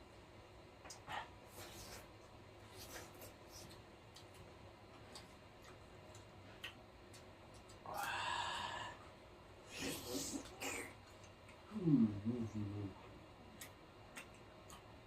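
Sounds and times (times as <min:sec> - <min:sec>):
chewing and lip smacking: 0:00.8 - 0:08.1, 0:13.0 - 0:15.0.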